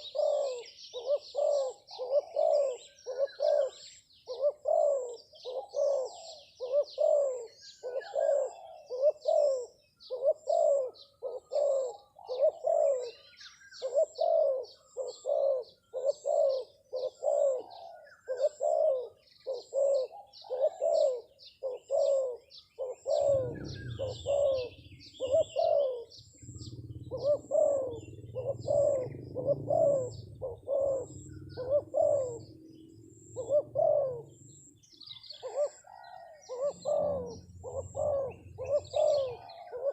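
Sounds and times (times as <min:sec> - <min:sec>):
dove cooing: 0:00.0 - 0:39.9
small birds chirping: 0:00.0 - 0:39.9
low rumble: 0:23.4 - 0:25.2.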